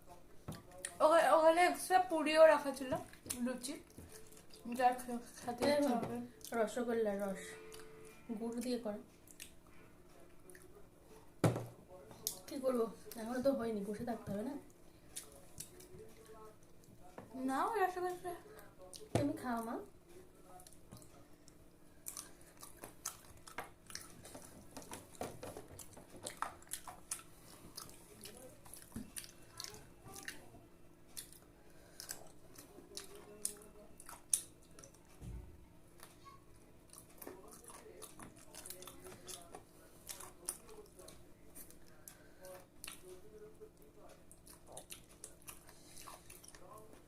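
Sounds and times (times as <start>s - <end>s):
wet chewing: 8.6s - 9.6s, 20.5s - 30.5s, 31.1s - 35.2s, 36.8s - 46.8s
chewing mouth clicks and smacks: 9.3s - 9.6s, 22.0s - 24.5s, 25.8s - 30.4s.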